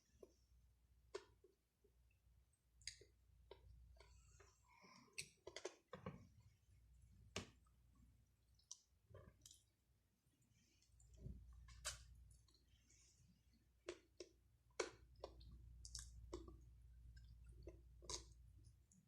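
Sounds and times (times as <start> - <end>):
eating clicks and smacks: 2.8 - 3.6, 5.2 - 6.0, 13.8 - 19.0.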